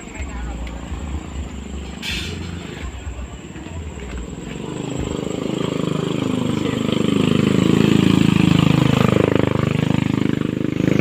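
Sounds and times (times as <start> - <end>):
engine revving: 3.8 - 11.0.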